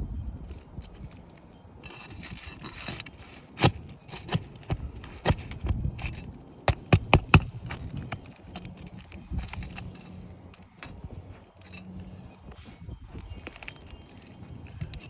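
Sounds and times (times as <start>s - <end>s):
tool scraping shingle: 1.8s - 15.0s
tool tapping and knocking: 3.0s - 8.3s.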